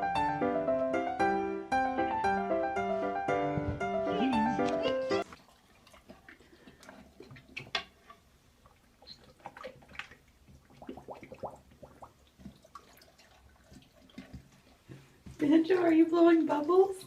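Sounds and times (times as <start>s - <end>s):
dog blowing bubbles in water: 5.2s - 14.9s
water drips and small splashes: 5.2s - 17.0s.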